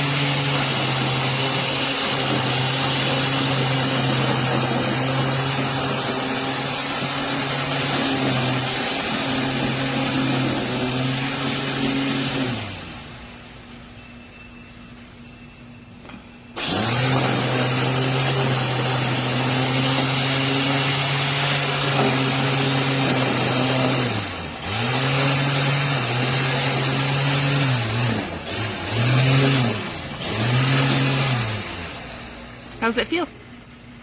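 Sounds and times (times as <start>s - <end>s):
electric string trimmer running: 0.0s - 13.8s, 16.0s - 33.6s.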